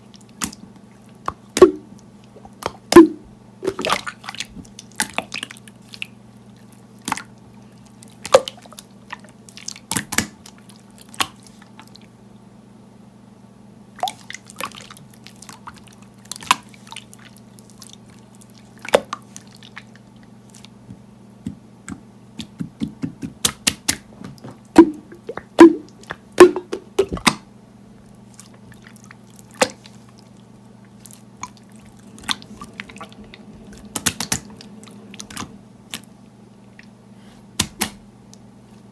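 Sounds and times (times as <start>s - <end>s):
low hum: 30.6s - 37.1s
slime squishing and popping: 37.6s - 38.0s.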